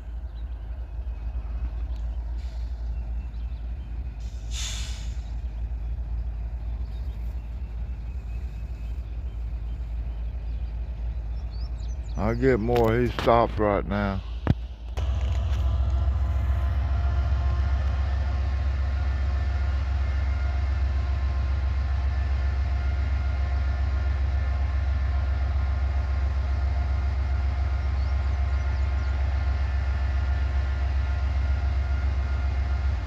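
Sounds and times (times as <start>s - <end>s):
constant whine: 0.0s - 4.4s, 5.2s - 33.0s
locomotive idling rumble: 0.0s - 33.0s.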